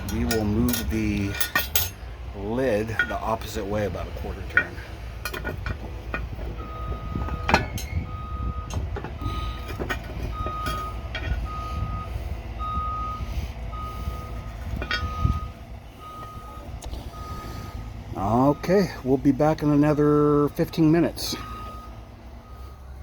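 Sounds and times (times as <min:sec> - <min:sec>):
sharp metal clanks: 0:00.0 - 0:02.1
low engine rumble: 0:00.0 - 0:23.0
reversing alarm beeping: 0:06.5 - 0:23.0.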